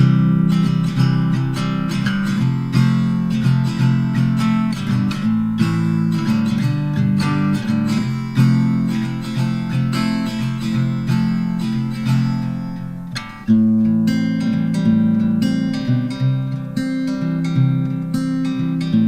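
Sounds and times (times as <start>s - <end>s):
acoustic guitar strumming: 0.0s - 19.0s.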